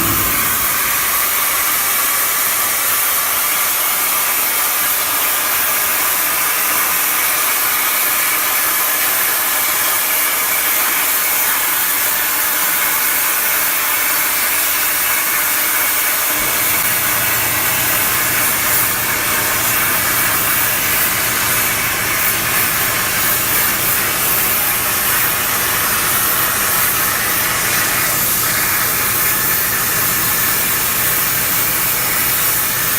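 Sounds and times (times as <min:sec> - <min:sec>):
low hum: 0:00.0 - 0:01.7
plasma cutter hissing: 0:00.0 - 0:02.4, 0:16.3 - 0:32.9.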